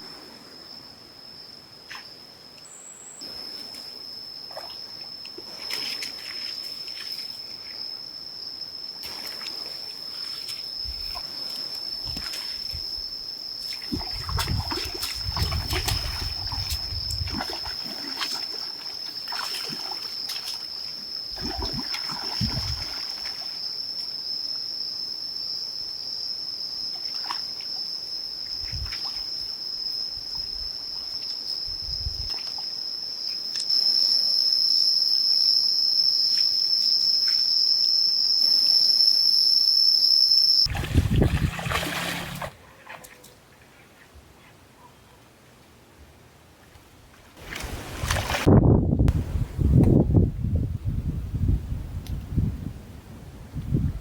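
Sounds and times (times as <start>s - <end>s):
high-pitched insect hum: 0.0s - 42.5s
water splashing and sloshing: 4.5s - 7.6s, 9.0s - 13.0s, 13.6s - 23.8s, 40.7s - 43.8s, 46.6s - 48.6s.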